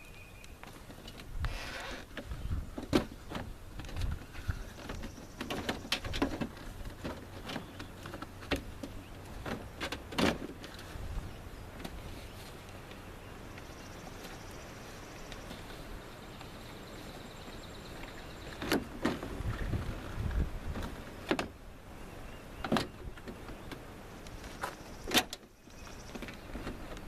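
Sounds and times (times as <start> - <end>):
clicks and rattles of car door work: 5.4 - 10.7, 25.1 - 25.5.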